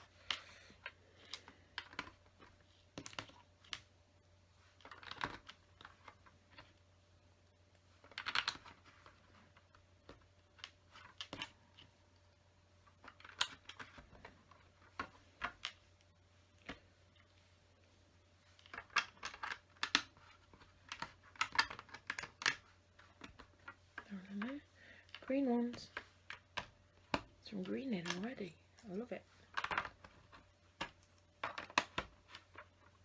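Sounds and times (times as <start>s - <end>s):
plastic bricks clicking: 4.8s - 6.7s, 8.0s - 9.4s, 13.0s - 14.1s, 18.6s - 24.5s, 29.5s - 33.0s.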